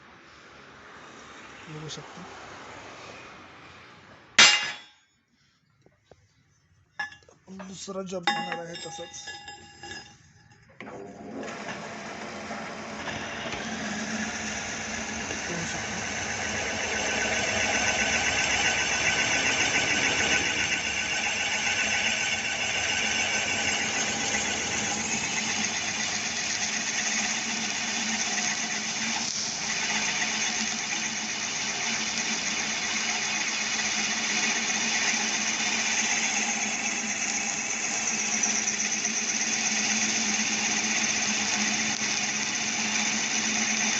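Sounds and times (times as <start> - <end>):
drill boring through metal: 10.9 - 43.9.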